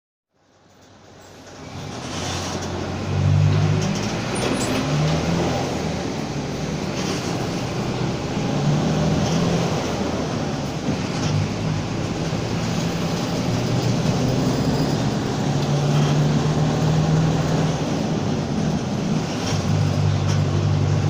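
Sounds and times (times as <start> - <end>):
bus diesel engine running: 0.4 - 21.0.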